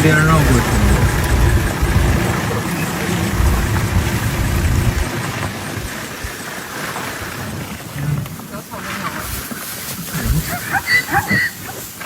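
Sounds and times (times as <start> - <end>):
vehicle engine running: 0.0 - 5.9
hiss of wind or road noise: 0.0 - 8.0.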